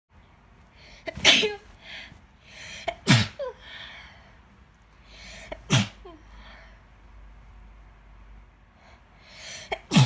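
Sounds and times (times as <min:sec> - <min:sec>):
woman sneezing: 0:01.1 - 0:01.7.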